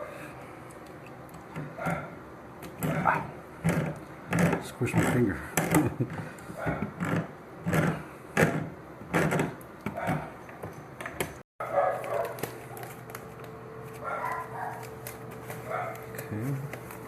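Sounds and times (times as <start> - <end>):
dog barking: 2.8 - 3.4, 10.0 - 10.4, 11.6 - 12.9, 14.0 - 14.9, 15.7 - 16.1.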